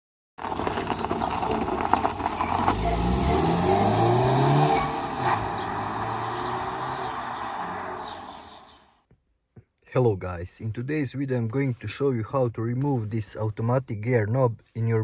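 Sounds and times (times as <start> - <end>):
car engine accelerating hard: 0.4 - 9.0.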